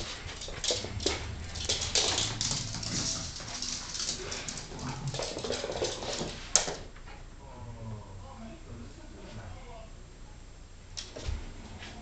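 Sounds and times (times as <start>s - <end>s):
dog paws knocking and scuffling: 0.0s - 7.0s.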